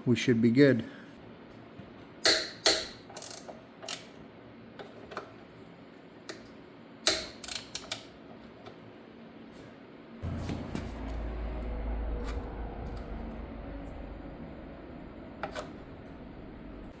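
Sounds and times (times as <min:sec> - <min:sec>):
socket wrench clicking: 0:02.2 - 0:04.1, 0:07.0 - 0:08.1.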